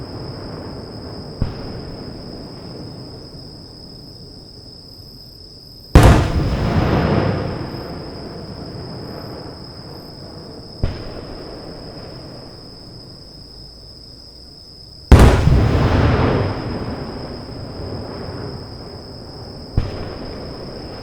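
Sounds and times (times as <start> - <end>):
fireworks bursting: 0.0 - 3.0, 5.9 - 9.7, 15.1 - 21.0
fireworks rumble: 0.0 - 4.6, 5.9 - 13.7, 15.0 - 21.0.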